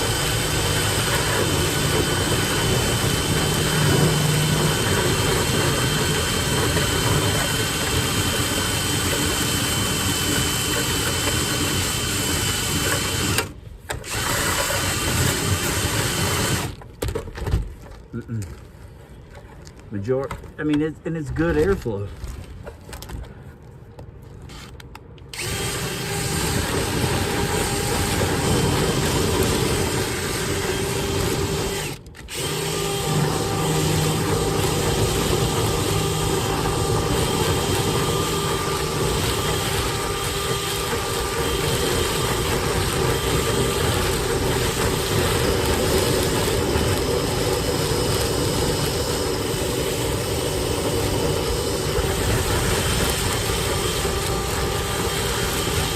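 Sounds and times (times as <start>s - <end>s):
power drill spinning brush in duct: 0.0s - 16.8s, 24.4s - 55.9s.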